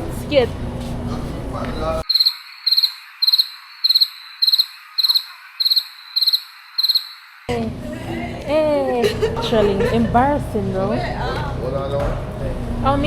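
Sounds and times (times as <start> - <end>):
crickets chirping: 2.0 - 7.5.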